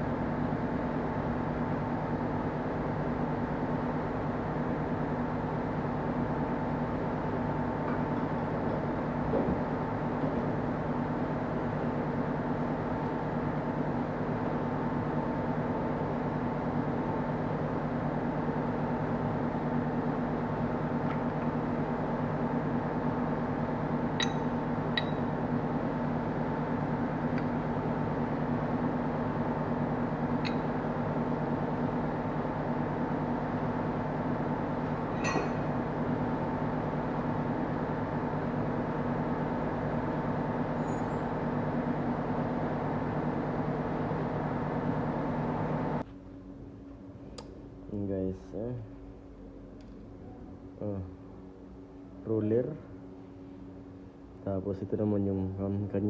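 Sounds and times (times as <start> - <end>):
droning workshop hum: 0.0 - 56.0
light metallic clinks: 35.2 - 35.7.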